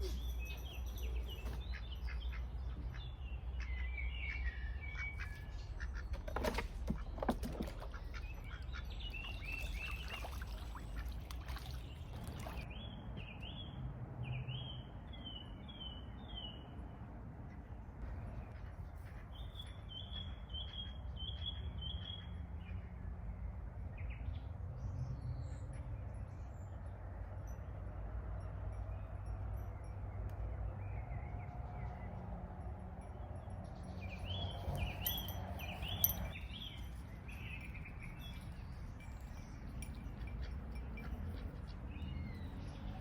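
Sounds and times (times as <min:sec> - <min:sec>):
low outdoor background: 0:00.0 - 0:43.0
songbird chirping: 0:33.1 - 0:43.0.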